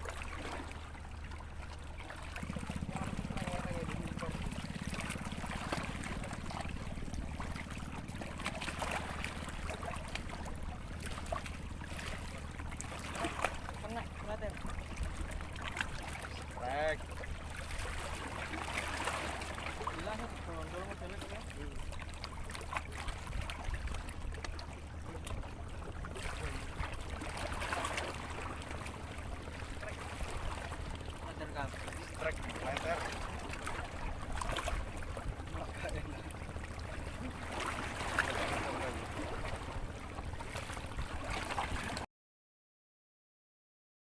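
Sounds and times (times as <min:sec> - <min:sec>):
small waves lapping and splashing: 0:00.0 - 0:42.1
steady low rumble: 0:02.0 - 0:13.1.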